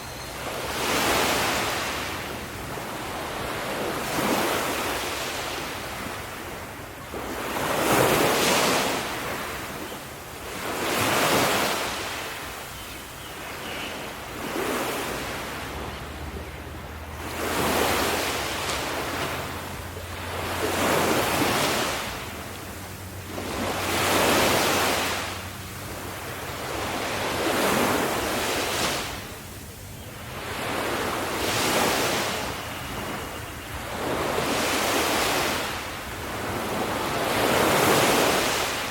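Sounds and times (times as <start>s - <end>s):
ocean waves breaking: 0.0s - 38.9s.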